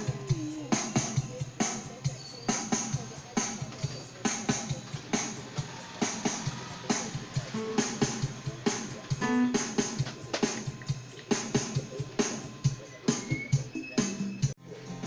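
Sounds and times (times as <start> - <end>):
keyboard drum beat: 0.0 - 15.0
held keyboard note: 7.4 - 8.6, 9.2 - 10.1.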